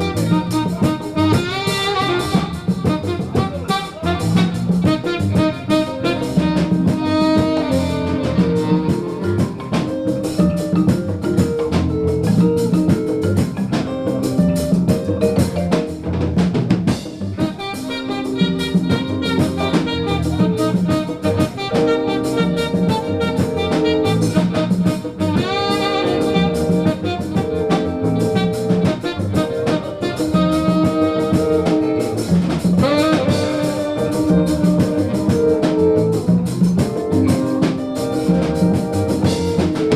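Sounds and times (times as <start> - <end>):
horns: 0.0 - 10.6, 16.9 - 39.9
drum kit beat: 0.0 - 39.9
live jazz band: 0.0 - 39.9.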